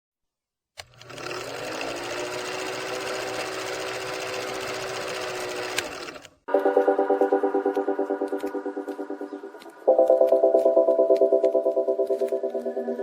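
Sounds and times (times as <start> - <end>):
drill press motor whirring: 0.8 - 6.5
music with pulsing beat: 6.5 - 13.0.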